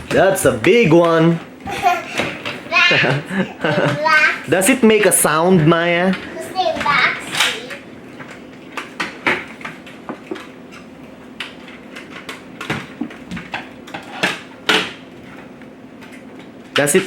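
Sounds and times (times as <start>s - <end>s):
toys and packaging clicking: 6.8s - 12.8s.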